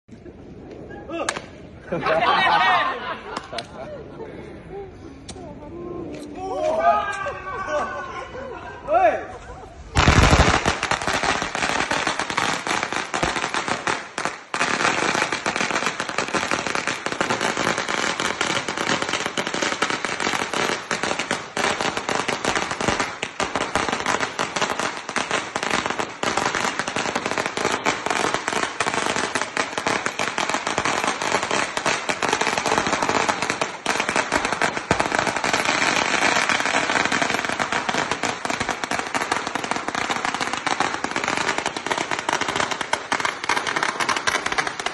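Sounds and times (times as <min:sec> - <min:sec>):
firecrackers crackling: 0:09.8 - 0:44.9.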